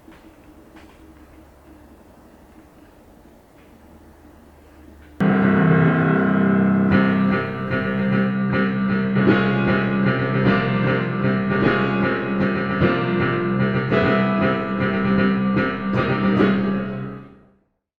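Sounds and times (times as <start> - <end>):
quick melodic notes: 5.2 - 8.2
music with low held tone: 5.2 - 8.3.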